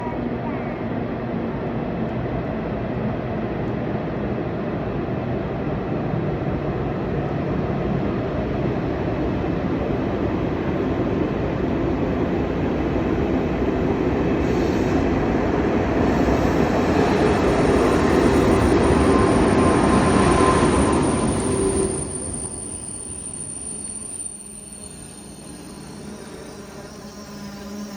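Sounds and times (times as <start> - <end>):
high-speed train rumble: 0.0 - 27.9
high squeal: 16.0 - 27.9
thin whine: 16.1 - 27.9.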